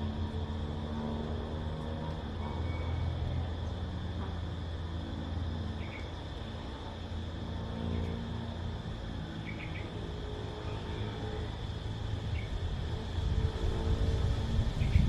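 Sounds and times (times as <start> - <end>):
cicadas droning: 0.0 - 15.0
distant engine hum: 0.0 - 15.0
bird chirps: 5.8 - 6.1, 9.4 - 10.0.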